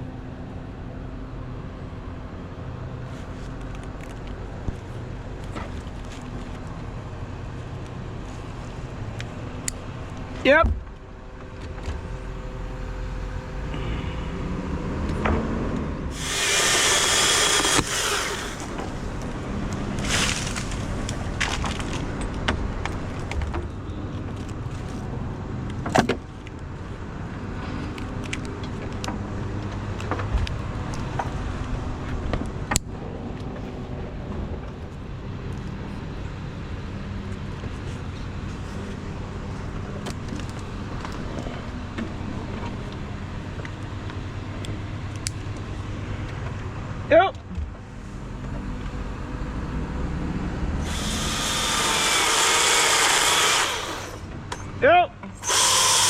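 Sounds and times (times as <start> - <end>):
truck engine running: 4.1 - 23.2
loud rushing noise: 12.4 - 21.2.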